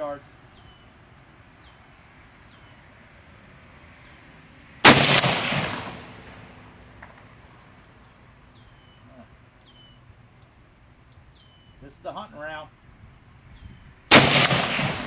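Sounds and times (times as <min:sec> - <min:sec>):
rifle shot with echo: 0:04.8 - 0:07.4, 0:14.1 - 0:15.0.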